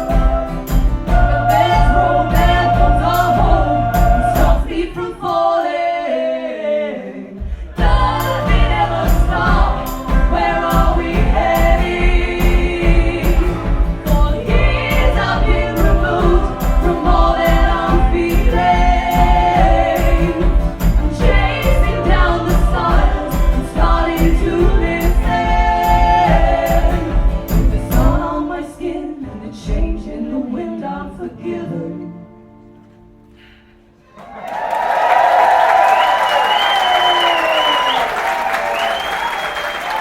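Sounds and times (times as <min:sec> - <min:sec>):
band playing steady beat: 0:00.0 - 0:04.9, 0:07.6 - 0:28.4
choir singing held harmonies: 0:00.0 - 0:32.5, 0:34.2 - 0:40.0.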